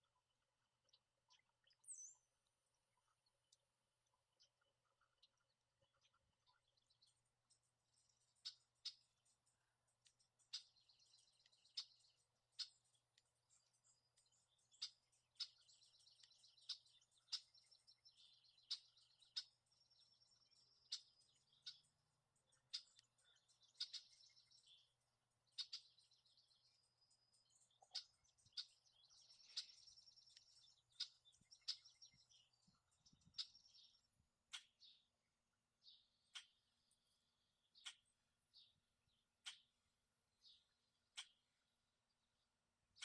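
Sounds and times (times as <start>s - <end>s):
songbirds chirping: 0.0s - 43.0s
rapid buzzy bird trills: 4.2s - 35.0s, 35.8s - 38.8s.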